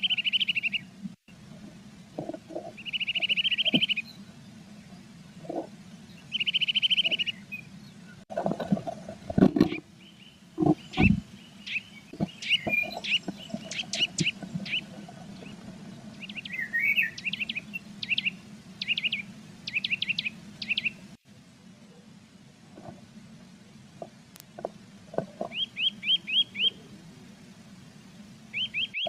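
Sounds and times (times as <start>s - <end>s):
birds chirping in nest box: 2.2s - 8.0s, 9.4s - 21.1s, 25.2s - 26.8s, 28.5s - 29.0s.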